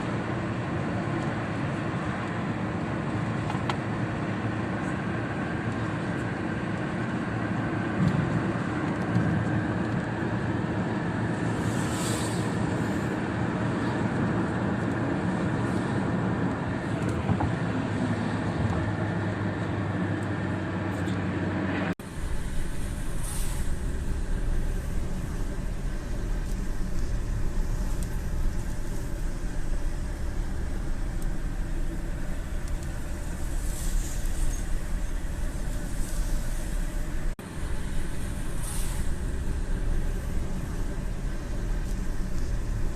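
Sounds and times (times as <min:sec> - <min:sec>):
tyre and road noise: 0:00.0 - 0:42.9
deep heavy rumble: 0:21.8 - 0:42.9
rain on a windshield: 0:22.0 - 0:42.9.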